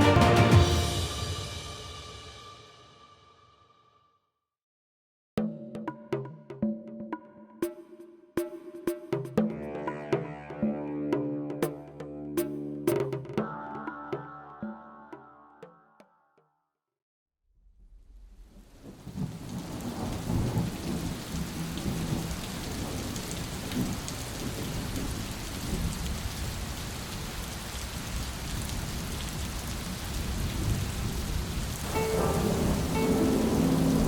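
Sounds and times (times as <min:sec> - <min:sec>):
heavy rain: 0:00.0 - 0:01.9, 0:18.4 - 0:34.0
low rumble of thunder: 0:18.0 - 0:26.4, 0:28.5 - 0:34.0.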